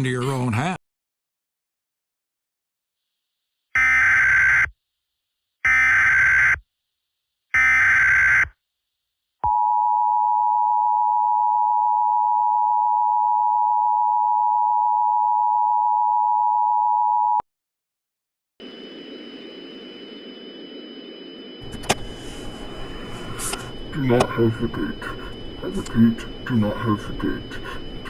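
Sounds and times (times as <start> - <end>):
steady hiss with high whines: 18.6 - 28.0
click: 21.7 - 22.1.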